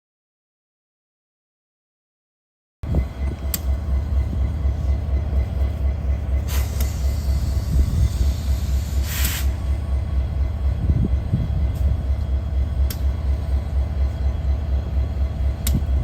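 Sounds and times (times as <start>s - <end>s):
diesel locomotive idling: 2.8s - 16.0s
short air hisses: 6.4s - 9.6s.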